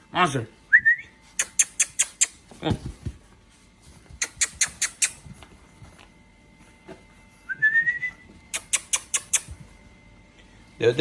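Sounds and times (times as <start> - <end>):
person whistling: 0.7 - 1.5, 7.5 - 8.2.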